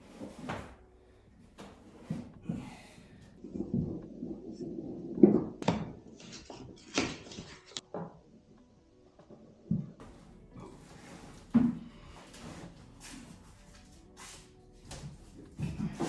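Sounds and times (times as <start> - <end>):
wooden panels knocking and rubbing: 10.0 - 16.0.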